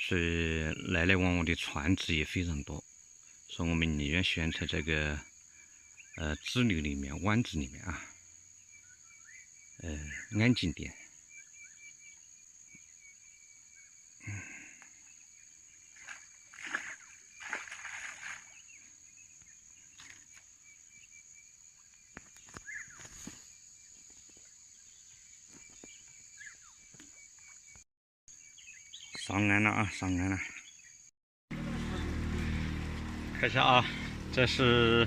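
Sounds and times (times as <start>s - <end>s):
insects chirring: 0.1s - 31.1s
rustles: 15.8s - 21.0s, 21.8s - 27.7s
fish splashing: 15.9s - 18.7s.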